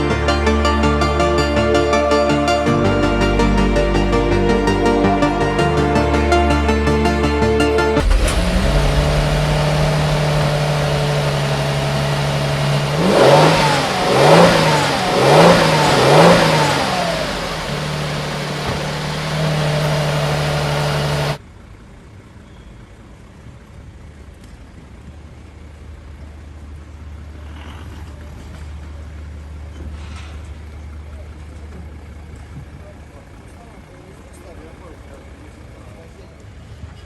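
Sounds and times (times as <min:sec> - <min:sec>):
car engine idling and revving: 0:00.0 - 0:22.2.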